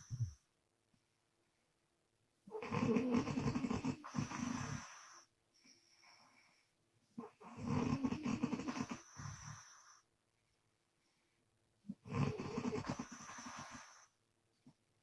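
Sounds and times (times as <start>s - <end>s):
woman snoring with lips flapping: 2.5s - 5.2s, 7.2s - 9.8s, 11.9s - 14.1s
soft breath: 4.0s - 7.2s, 9.0s - 11.6s.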